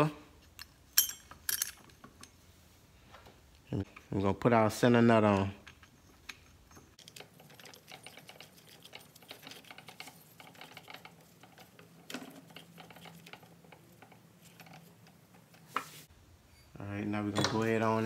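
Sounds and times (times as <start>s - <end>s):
metal parts clicking: 0.5s - 2.4s, 5.3s - 15.7s.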